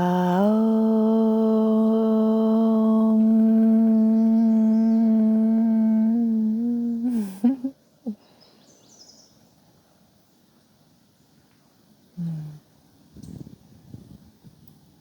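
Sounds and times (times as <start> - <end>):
woman humming steady note: 0.0 - 8.2, 12.2 - 12.6
faint bird chirps: 3.0 - 10.4.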